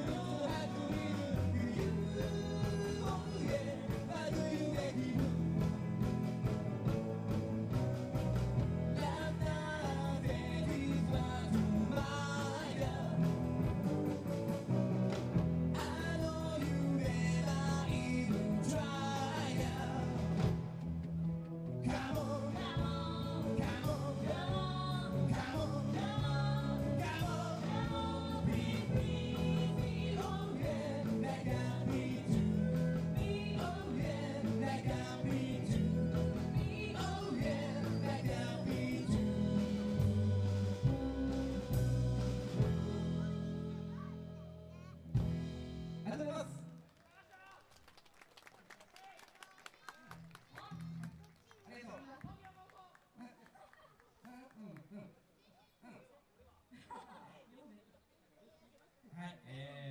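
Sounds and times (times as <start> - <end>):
lead singer singing: 0.0 - 5.8, 8.8 - 13.6, 15.7 - 20.7, 21.8 - 43.9
low bass line: 0.0 - 46.0
live band playing: 0.0 - 46.4.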